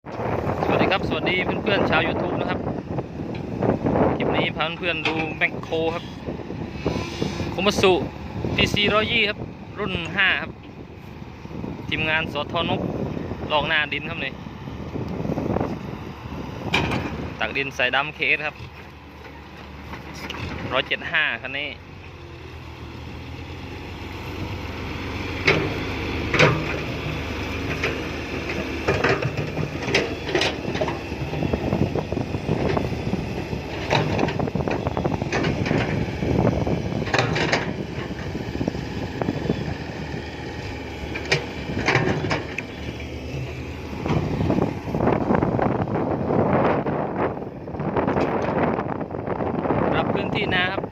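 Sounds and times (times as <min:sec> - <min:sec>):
excavator diesel engine running: 0:00.1 - 0:50.9
excavator bucket clanking: 0:04.7 - 0:05.9, 0:16.6 - 0:17.2, 0:25.4 - 0:39.7, 0:41.0 - 0:45.3.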